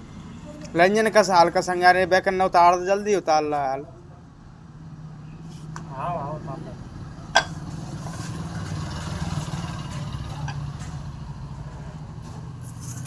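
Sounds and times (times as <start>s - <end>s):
motorcycle engine idling: 7.4s - 12.1s.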